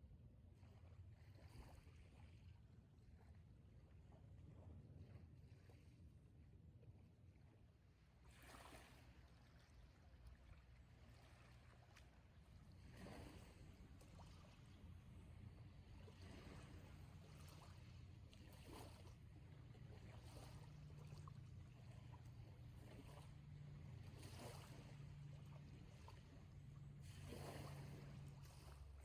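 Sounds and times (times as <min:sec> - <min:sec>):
faint low hum: 0:09.3 - 0:29.0.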